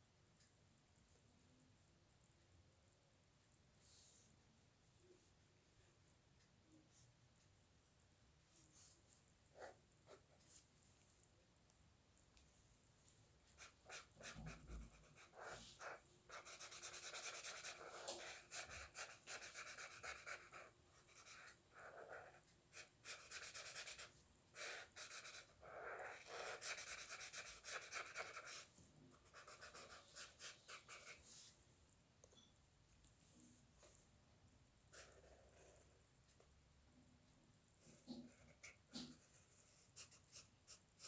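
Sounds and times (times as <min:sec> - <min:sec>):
pencil scratching on paper: 0:08.7 - 0:10.8, 0:13.5 - 0:31.6, 0:34.9 - 0:36.0, 0:37.8 - 0:41.0.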